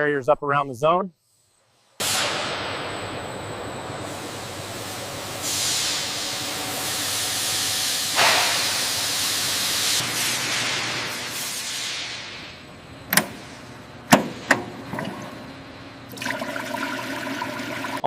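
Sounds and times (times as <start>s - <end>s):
loud hiss: 1.9s - 2.8s, 4.0s - 12.6s.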